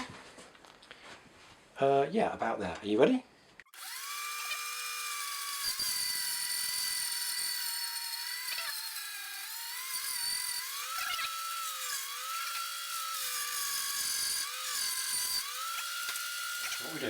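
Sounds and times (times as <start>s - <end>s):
bandsaw whine cutting wood: 3.7s - 17.0s.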